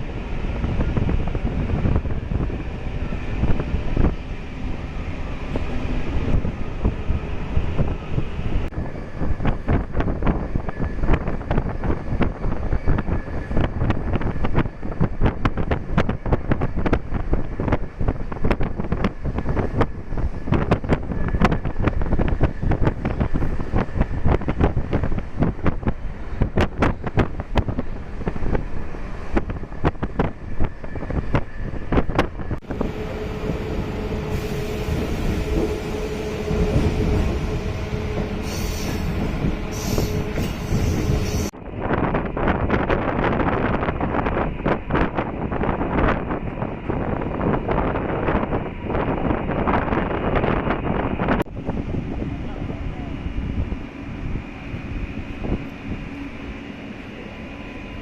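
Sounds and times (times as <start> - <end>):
train rushing with low hum: 0.0 - 58.0.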